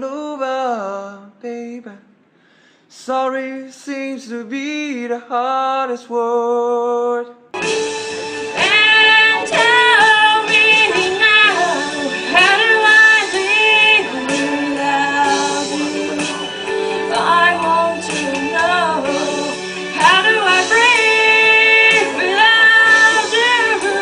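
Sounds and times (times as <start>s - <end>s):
instrumental accompaniment: 7.6s - 24.0s
woman singing: 8.6s - 24.0s.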